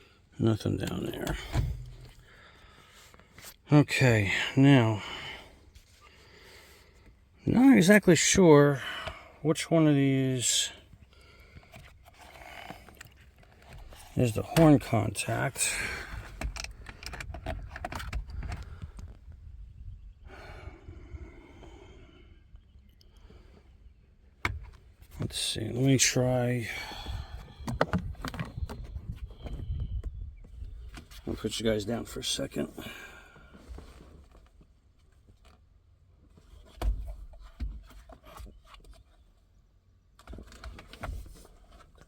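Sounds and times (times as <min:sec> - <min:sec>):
parts clicking and rattling: 0:00.8 - 0:02.2, 0:15.6 - 0:19.1
loud thump: 0:01.4 - 0:02.1.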